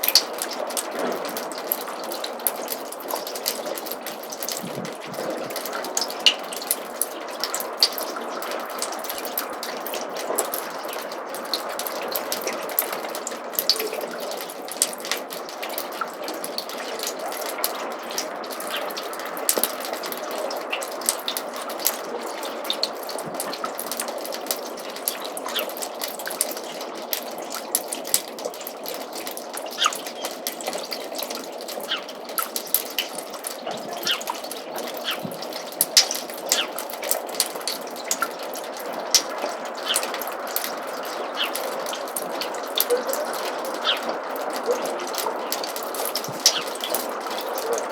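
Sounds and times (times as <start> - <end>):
quick water drips: 0.0 - 47.9
water trickling in gutter: 0.0 - 47.9.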